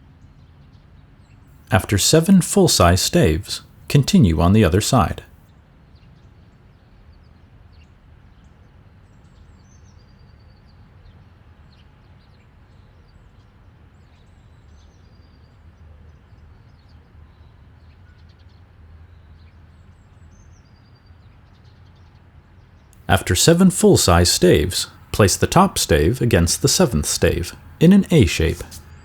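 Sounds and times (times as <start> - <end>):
steady low hum: 23.1 - 28.8.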